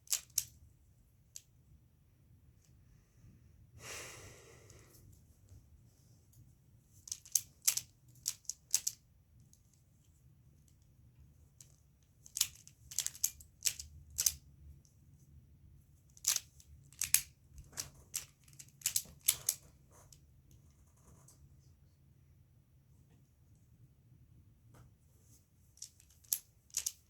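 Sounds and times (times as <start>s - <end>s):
plastic puzzle layers clicking: 7.1s - 9.0s, 12.3s - 14.4s, 18.2s - 19.6s, 25.8s - 27.0s.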